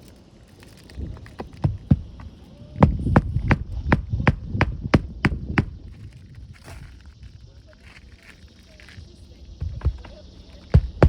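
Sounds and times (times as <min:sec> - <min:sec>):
hammer striking roofing nails: 0:01.4 - 0:05.8.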